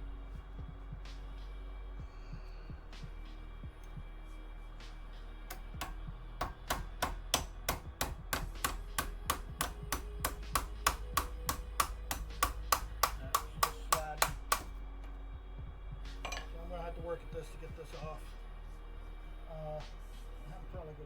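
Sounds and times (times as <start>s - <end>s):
hammer blows on metal: 5.5s - 14.8s.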